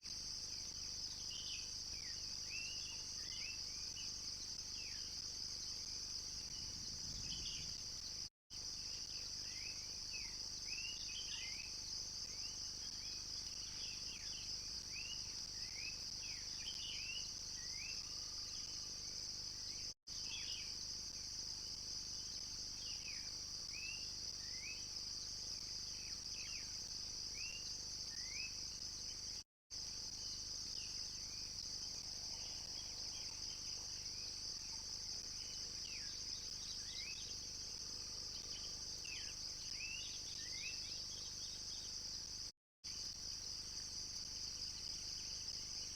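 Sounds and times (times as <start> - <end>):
shrill insect chorus: 0.1 - 45.9.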